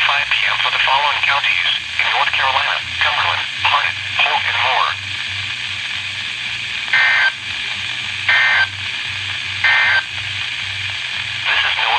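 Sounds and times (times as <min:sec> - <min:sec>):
radio static: 0:00.0 - 0:05.9, 0:06.7 - 0:11.9
shrill digital data bursts: 0:09.6 - 0:10.1.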